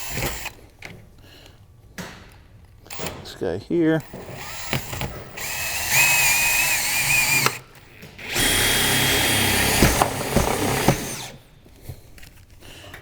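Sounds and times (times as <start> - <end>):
power drill whirring: 0.0 - 0.6, 2.9 - 3.3, 4.0 - 11.5.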